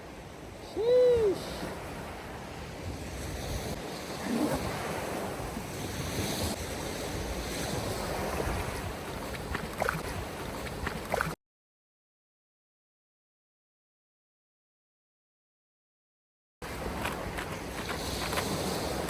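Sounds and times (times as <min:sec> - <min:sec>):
surf breaking on a beach: 0:00.0 - 0:11.1, 0:16.6 - 0:19.0
wind buffeting the microphone: 0:00.0 - 0:11.2, 0:16.6 - 0:19.0.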